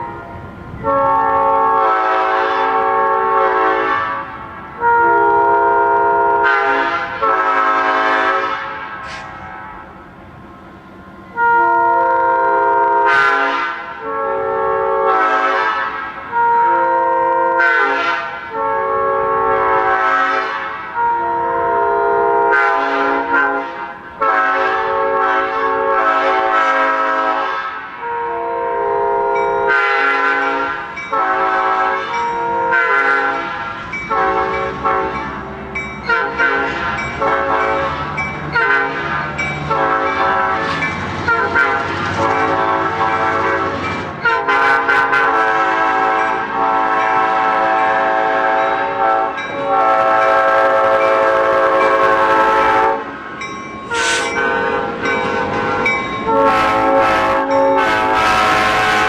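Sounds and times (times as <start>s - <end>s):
locomotive air horn blasts: 0.0s - 9.9s, 11.3s - 59.0s.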